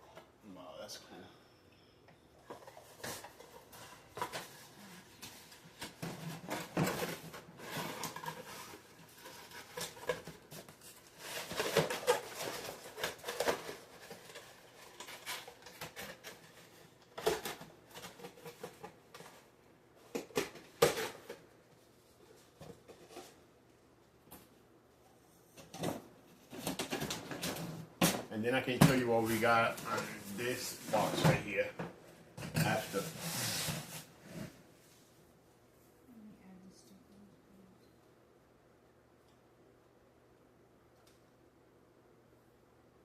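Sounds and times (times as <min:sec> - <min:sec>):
plastic and cardboard packaging rustling: 0:02.4 - 0:23.6, 0:25.6 - 0:35.2.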